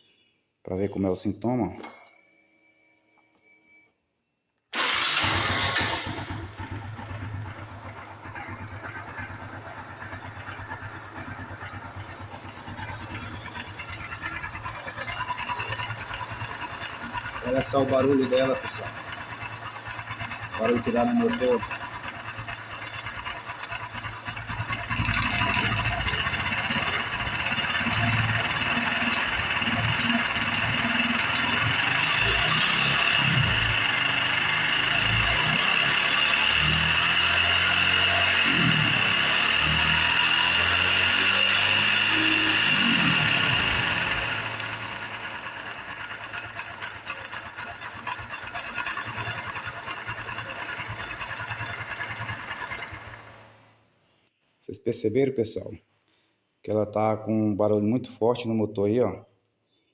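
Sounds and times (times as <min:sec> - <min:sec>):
motorcycle engine knocking: 0:06.7 - 0:38.1, 0:39.1 - 0:53.4.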